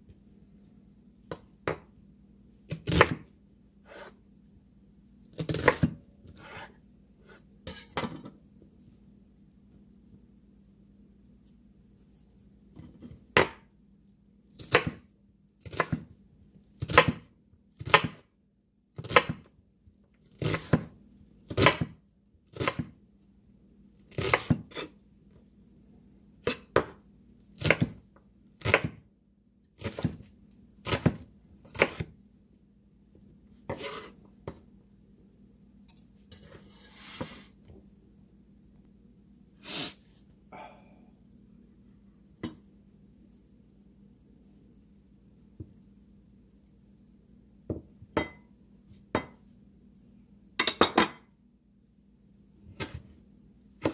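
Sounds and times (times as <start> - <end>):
knife chopping on cutting board: 2.7 - 3.3, 3.9 - 4.2, 5.4 - 6.7, 14.6 - 15.0, 15.6 - 16.1, 16.8 - 18.2, 19.0 - 19.5, 20.4 - 20.9, 21.5 - 22.0, 22.6 - 22.9, 24.1 - 24.9, 27.6 - 28.0, 28.6 - 29.0, 29.8 - 32.1, 33.7 - 34.6
knife scraping board: 3.8 - 4.2, 5.4 - 8.0, 33.7 - 34.2, 36.3 - 37.6.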